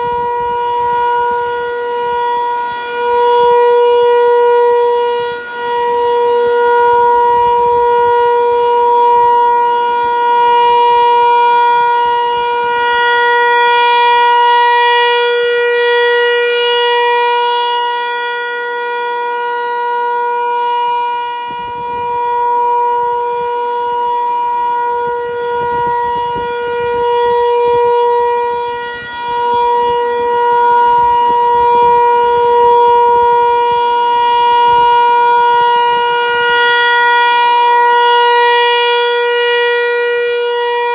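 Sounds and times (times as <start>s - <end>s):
rotating warning siren: 0.0s - 40.9s.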